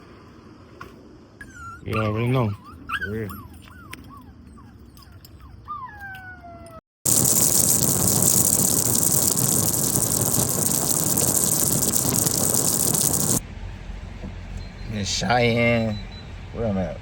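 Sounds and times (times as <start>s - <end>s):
dog whining: 1.4s - 6.8s.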